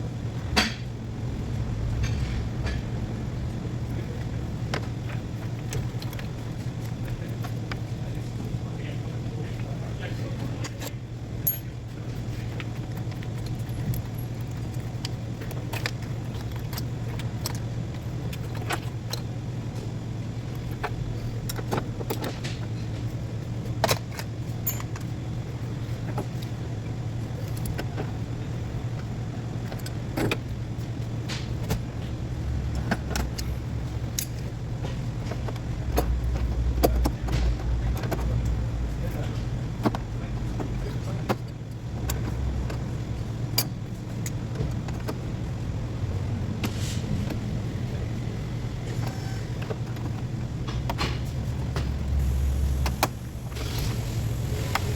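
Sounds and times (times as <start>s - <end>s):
deep rumble: 0.0s - 5.1s
steady low hum: 0.0s - 54.9s
tools clinking on engine parts: 11.4s - 11.9s, 23.9s - 25.1s.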